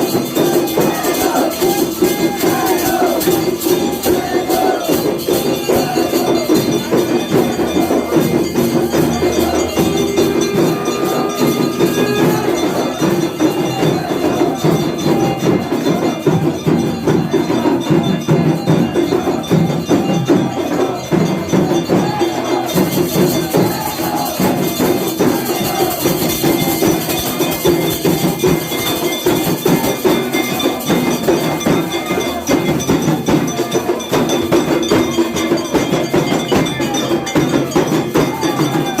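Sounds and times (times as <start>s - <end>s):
bells clanging: 0.0s - 39.0s
percussion playing: 0.0s - 39.0s
sustained ringing tone: 5.5s - 21.8s.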